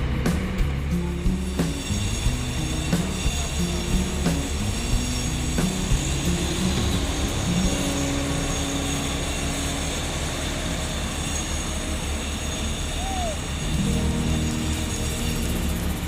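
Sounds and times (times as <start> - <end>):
paving machinery engine drone: 0.0 - 16.0.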